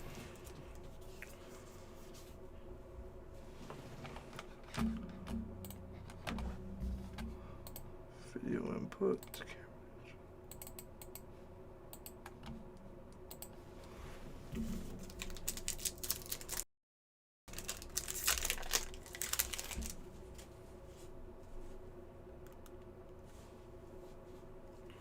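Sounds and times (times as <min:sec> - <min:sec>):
foil wrapper crinkling and tearing: 0:15.0 - 0:16.6, 0:17.5 - 0:20.0.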